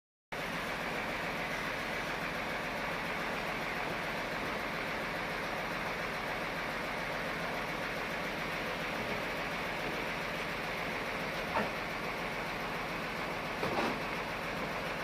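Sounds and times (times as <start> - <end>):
sawmill machinery humming: 0.4 - 15.0.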